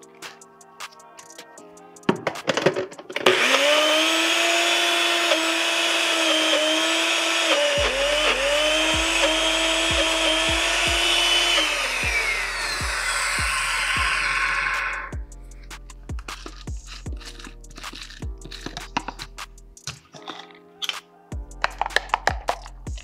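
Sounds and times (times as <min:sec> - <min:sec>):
blender motor running: 0:03.2 - 0:15.1
motor winding down whine: 0:03.3 - 0:15.1.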